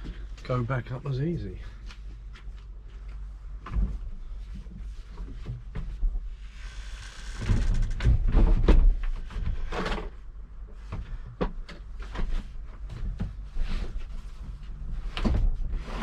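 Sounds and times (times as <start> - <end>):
wooden bed knocks and clunks: 8.0 - 10.1.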